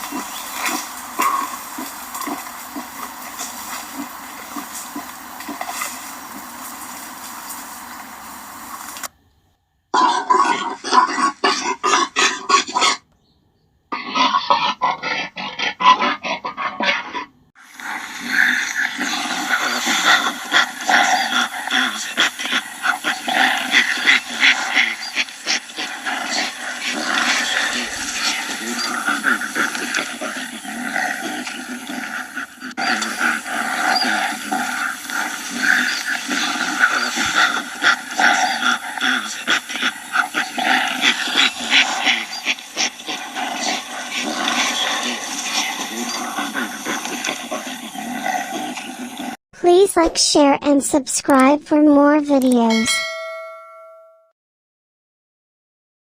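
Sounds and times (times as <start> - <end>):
gorilla grunting: 0.0 - 6.5, 10.0 - 13.0, 13.9 - 17.2, 18.2 - 49.0.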